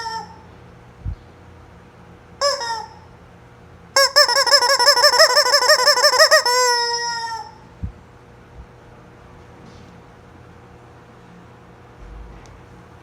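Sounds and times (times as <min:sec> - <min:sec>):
rubber chicken toy squealing: 0:00.0 - 0:00.4, 0:02.4 - 0:03.0, 0:04.0 - 0:07.6.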